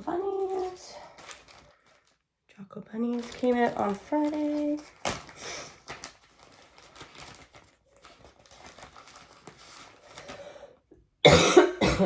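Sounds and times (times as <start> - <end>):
fabric rustling and crinkling: 0.0 - 10.4
person coughing: 11.2 - 12.0.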